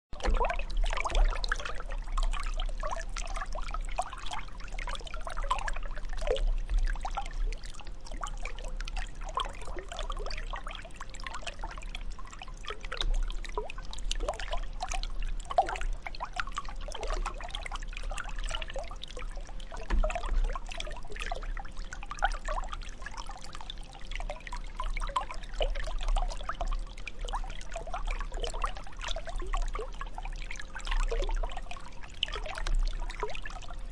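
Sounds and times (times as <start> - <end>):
water trickling and gurgling: 0.2 - 33.9.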